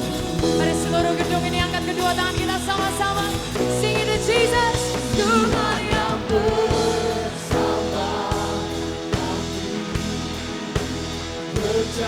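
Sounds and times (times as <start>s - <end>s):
drum beat: 0.0s - 12.0s
voices singing together: 0.0s - 12.0s
worship band playing: 0.0s - 12.0s.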